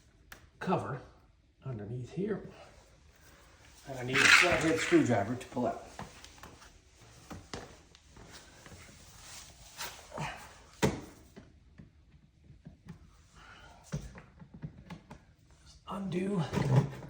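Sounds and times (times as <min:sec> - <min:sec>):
screwdriver clicking and scraping on screws: 0:04.1 - 0:05.1.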